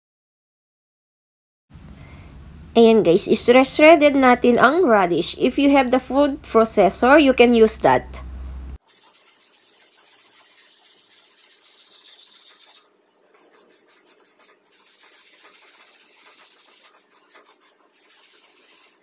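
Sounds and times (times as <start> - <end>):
grater rasping scrape: 8.8 - 12.8, 13.4 - 19.0.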